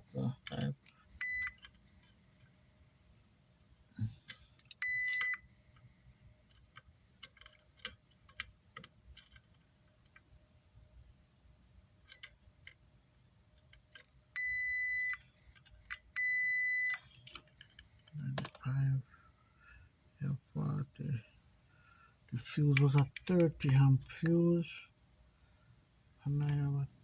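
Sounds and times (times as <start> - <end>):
multimeter beeping: 1.2 - 1.8, 4.7 - 5.5, 14.4 - 15.2, 15.9 - 17.1.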